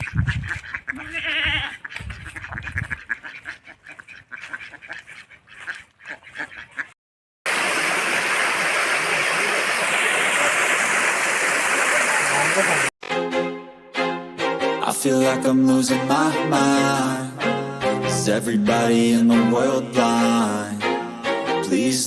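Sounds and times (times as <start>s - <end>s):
waterfall rushing: 7.5s - 12.9s.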